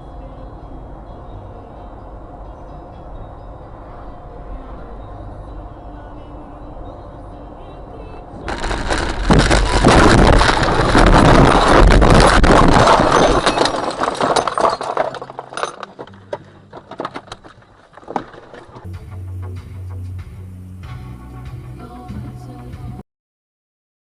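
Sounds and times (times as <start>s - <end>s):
vehicle crash crunching and scraping: 8.4s - 19.0s
debris clinking: 8.5s - 18.9s.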